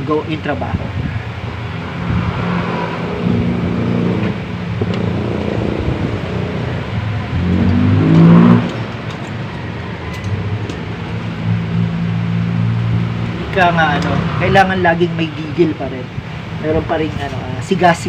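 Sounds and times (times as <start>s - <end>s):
vehicle engine revving: 1.2s - 15.1s.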